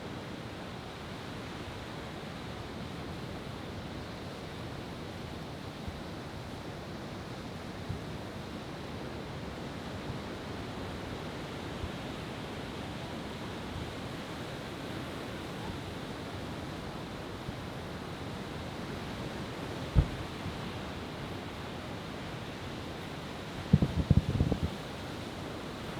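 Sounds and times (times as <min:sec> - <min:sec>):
faint short thumps: 0:20.0 - 0:20.4.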